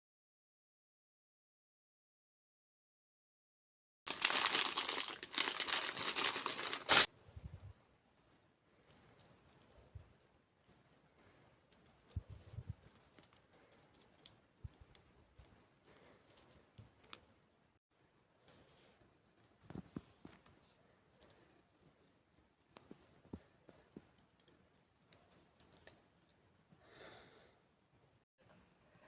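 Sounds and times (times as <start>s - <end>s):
plastic packaging crinkling and tearing: 4.1s - 7.1s.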